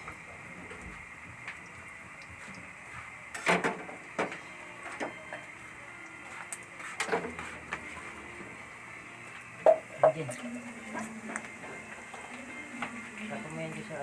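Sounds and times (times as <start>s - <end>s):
utensils and dishes clattering: 3.3s - 5.5s, 6.9s - 7.6s.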